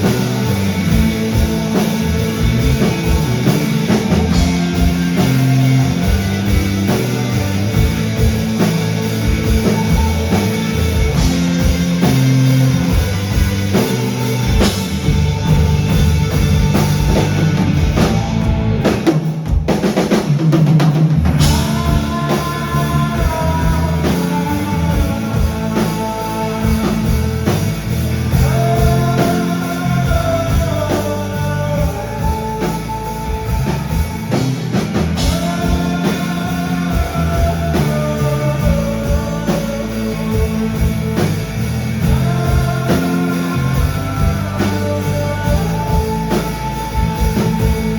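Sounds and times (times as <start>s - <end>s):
melodic electric guitar lines: 0.0s - 19.2s
live rock band playing: 0.0s - 47.9s.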